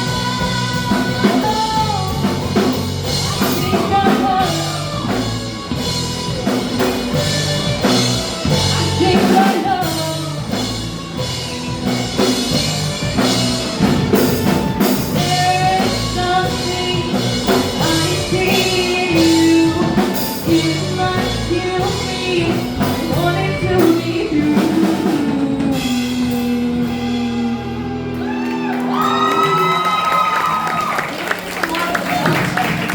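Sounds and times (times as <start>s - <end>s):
person singing: 0.0s - 10.8s, 14.2s - 28.1s
rock band playing live: 0.0s - 32.9s.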